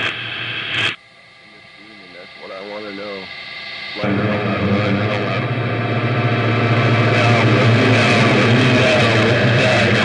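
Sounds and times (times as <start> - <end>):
steady low hum: 0.6 - 10.0
choppy reversed audio garble: 4.0 - 10.0.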